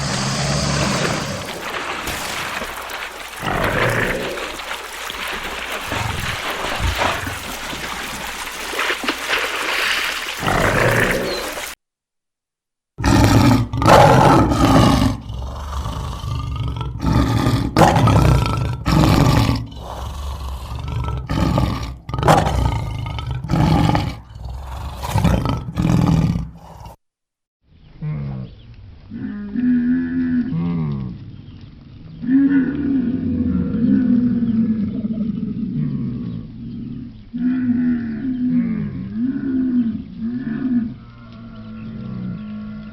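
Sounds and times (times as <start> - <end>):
lion roaring: 0.0 - 11.8, 13.0 - 27.0, 32.2 - 42.9
other animal sound: 0.0 - 11.8.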